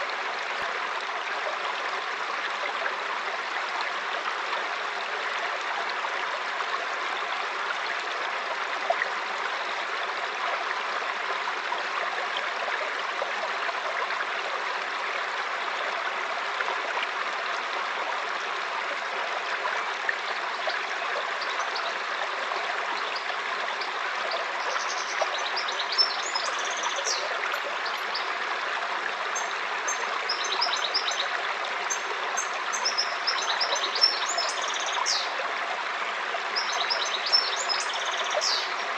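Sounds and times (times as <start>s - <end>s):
river water flowing: 0.0s - 38.9s
songbirds chirping: 36.6s - 38.8s.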